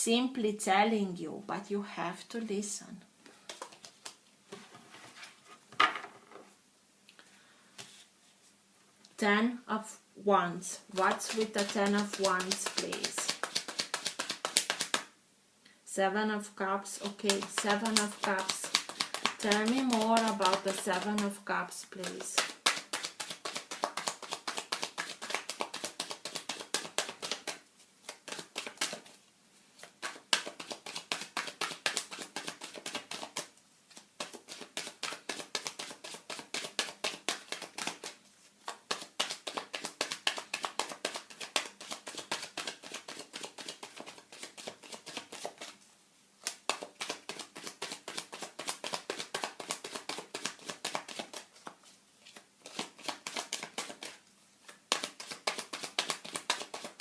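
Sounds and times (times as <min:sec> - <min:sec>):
cards being shuffled: 0:03.4 - 0:05.3, 0:10.9 - 0:15.1, 0:17.0 - 0:29.2, 0:29.8 - 0:45.8, 0:46.4 - 0:57.0.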